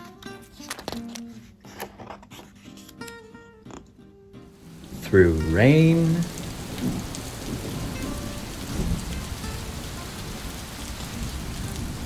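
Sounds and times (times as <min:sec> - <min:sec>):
heavy rain downpour: 0:04.6 - 0:12.0
low thunder rumbling: 0:06.1 - 0:12.0.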